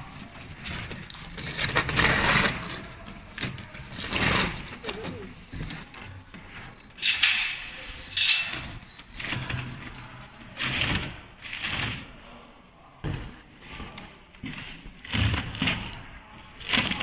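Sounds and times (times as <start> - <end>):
machine parts scraping and clattering: 0.1 - 12.1.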